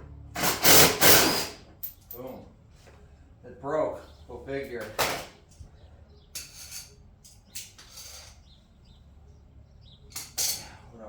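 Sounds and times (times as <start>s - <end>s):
tools and parts scraping and rustling: 0.4s - 2.9s, 4.8s - 5.6s, 6.3s - 8.6s, 10.1s - 10.8s.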